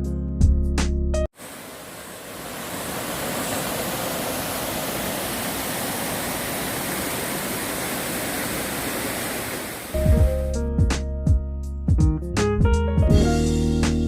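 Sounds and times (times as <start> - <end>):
stream water rushing: 1.4 - 10.0.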